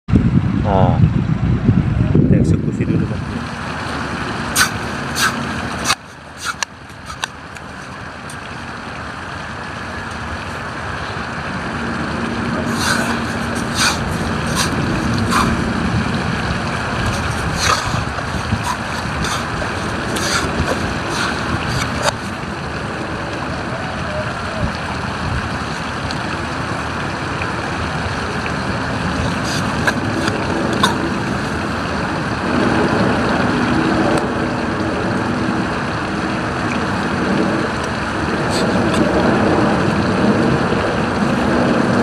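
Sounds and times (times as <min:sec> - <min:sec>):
wind: 0:00.1 - 0:42.0
digging knocks and scrapes in sand: 0:04.6 - 0:07.9, 0:12.7 - 0:15.6, 0:16.9 - 0:22.4, 0:29.3 - 0:31.6
surf: 0:11.9 - 0:23.5.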